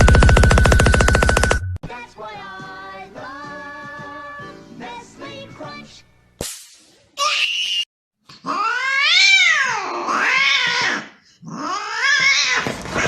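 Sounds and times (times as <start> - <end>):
cat yowling: 8.4 - 12.7.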